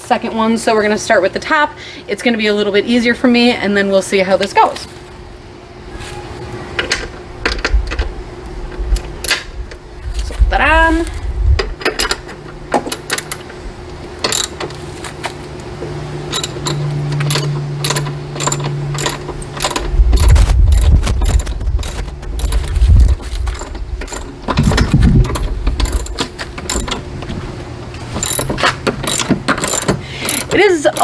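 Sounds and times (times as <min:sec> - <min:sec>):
tool handling clatter: 0:11.8 - 0:13.6, 0:14.2 - 0:15.7, 0:16.3 - 0:31.0
socket ratchet clicking: 0:12.8 - 0:13.5, 0:14.2 - 0:14.6, 0:16.3 - 0:27.0, 0:28.2 - 0:31.0.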